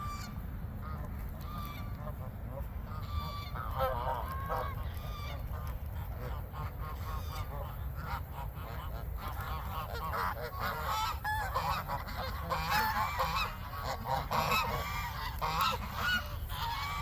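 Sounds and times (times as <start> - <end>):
geese honking: 0.0 - 17.0
steady low rumble: 0.0 - 17.0.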